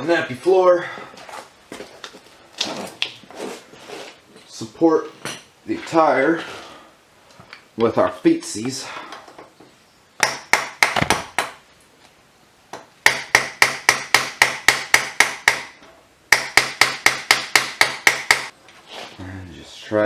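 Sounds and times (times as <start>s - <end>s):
hammer striking metal axle: 13.0s - 18.5s.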